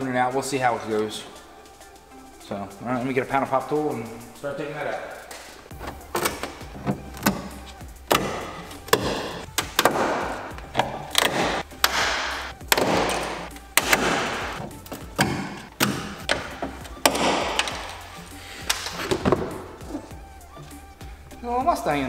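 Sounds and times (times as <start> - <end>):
music with punchy beat: 5.2 - 22.0.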